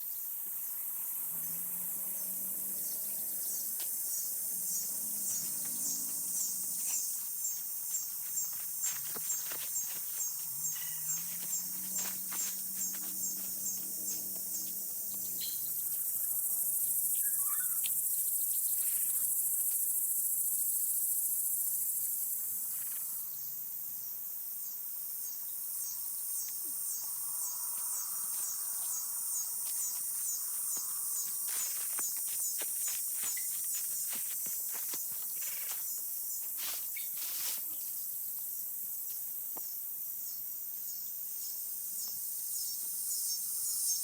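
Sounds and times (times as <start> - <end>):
insects trilling: 0.0 - 44.0.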